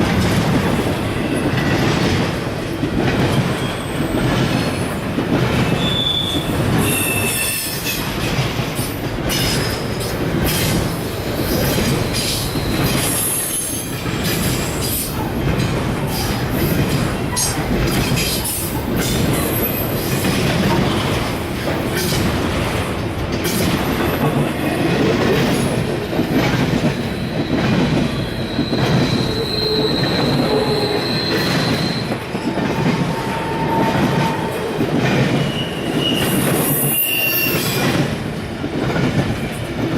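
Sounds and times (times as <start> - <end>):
high wheel squeals: 5.7 - 7.8, 28.1 - 32.2, 35.4 - 37.8.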